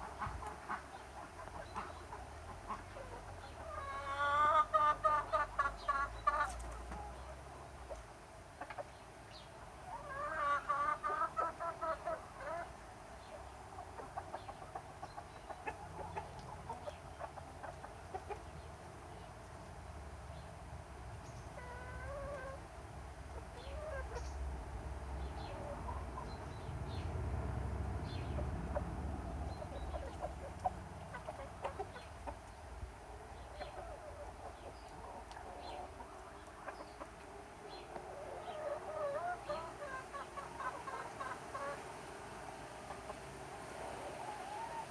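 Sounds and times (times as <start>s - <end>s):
chickens clucking: 0.0s - 27.2s, 27.9s - 44.9s.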